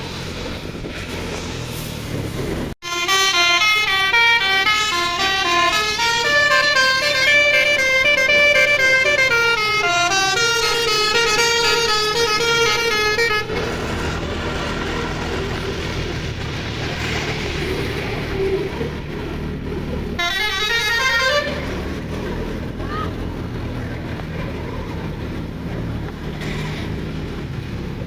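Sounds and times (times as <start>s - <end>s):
bus rumble: 0.0s - 28.0s
wind: 0.0s - 28.0s
musical bus horn melody: 2.8s - 16.5s, 20.2s - 23.7s.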